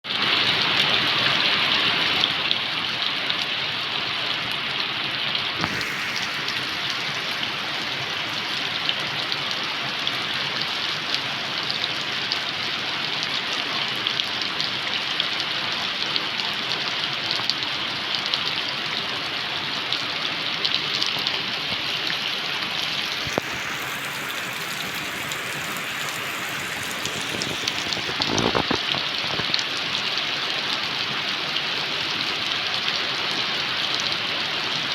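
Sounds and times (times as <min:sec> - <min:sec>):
rain falling in forest: 0:00.1 - 0:34.9
drops ticking on leaves: 0:23.0 - 0:28.9.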